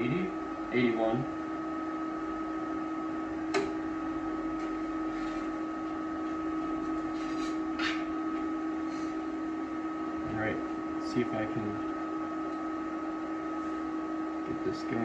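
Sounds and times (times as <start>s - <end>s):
welder fan humming: 0.0s - 15.0s
sharp click: 3.5s - 3.8s.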